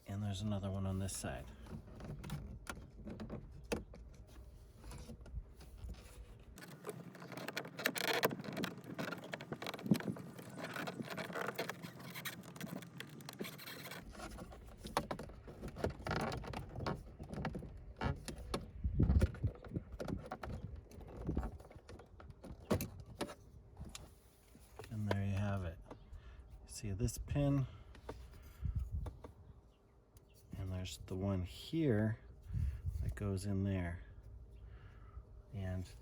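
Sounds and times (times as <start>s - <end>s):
plastic trim clicks and scraping: 1.5s - 26.1s.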